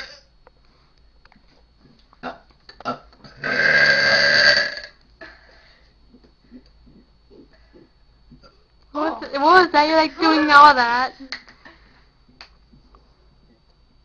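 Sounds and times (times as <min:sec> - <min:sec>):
loud burp: 0:00.0 - 0:00.3, 0:02.2 - 0:05.0.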